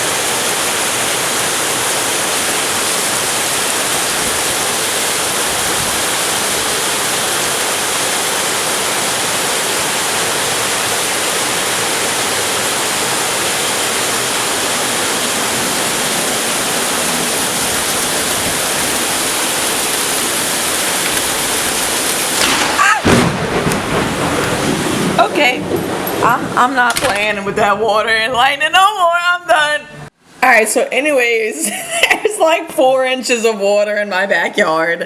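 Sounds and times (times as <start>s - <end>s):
heavy rain pouring: 0.0s - 28.9s
sudden loud sound: 22.4s - 28.5s.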